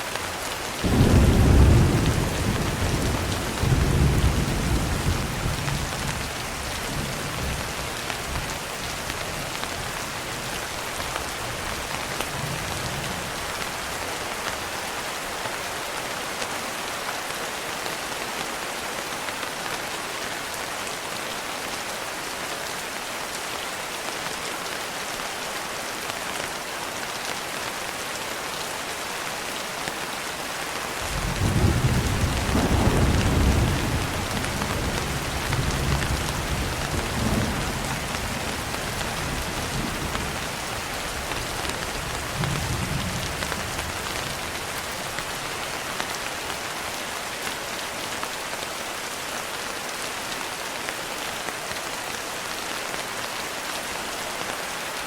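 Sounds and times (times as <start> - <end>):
steady rain: 0.0 - 55.0
thunder rumbling: 0.8 - 6.1.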